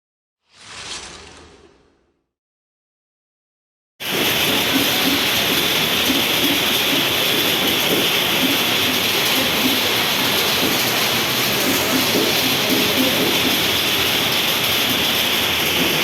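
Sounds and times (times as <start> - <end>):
heavy rain pouring: 4.0 - 16.0.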